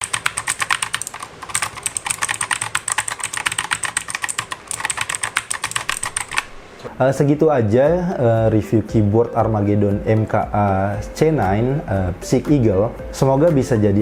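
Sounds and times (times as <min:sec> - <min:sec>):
mechanical keyboard typing: 0:00.0 - 0:06.6.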